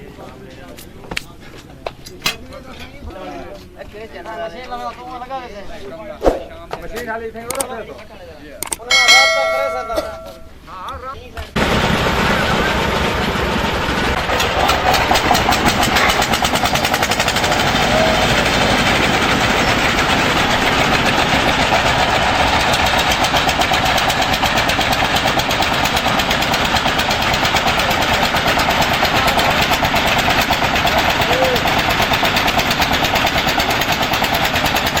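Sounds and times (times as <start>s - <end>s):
diesel engine running: 11.6s - 35.0s.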